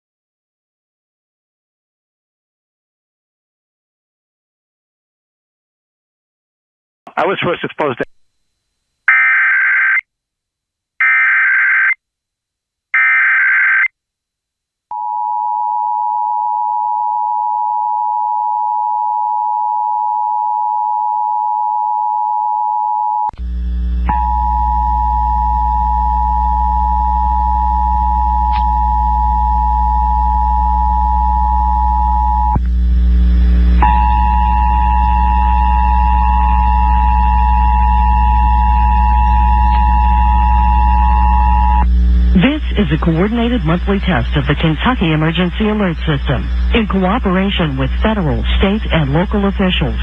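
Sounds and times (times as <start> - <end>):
low hum: 23.4 - 50.0.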